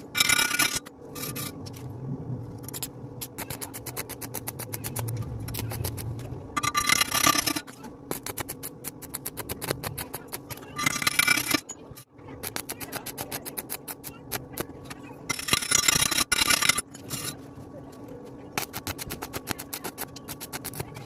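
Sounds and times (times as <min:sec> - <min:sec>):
welding arc crackling: 0:02.7 - 0:11.6, 0:18.6 - 0:20.9.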